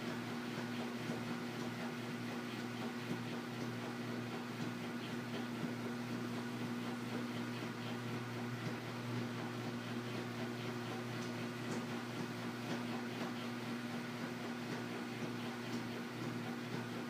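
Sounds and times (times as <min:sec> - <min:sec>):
washing machine motor hum: 0:00.0 - 0:17.0.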